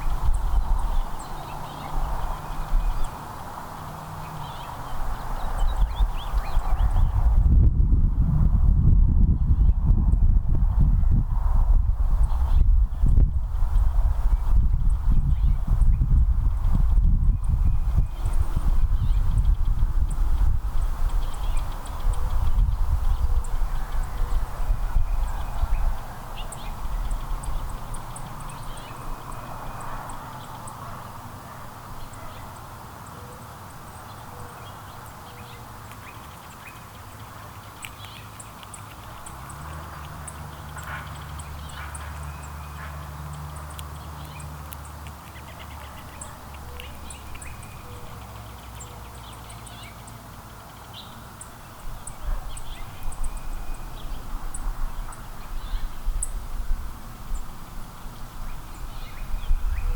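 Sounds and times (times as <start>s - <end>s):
songbirds chirping: 0.0s - 8.1s, 12.2s - 59.9s.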